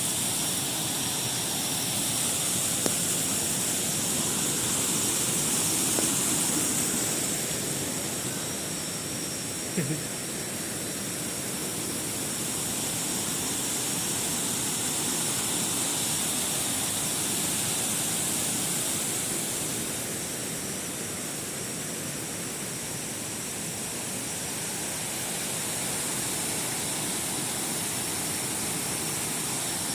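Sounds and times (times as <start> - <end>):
waterfall rushing: 0.0 - 8.7.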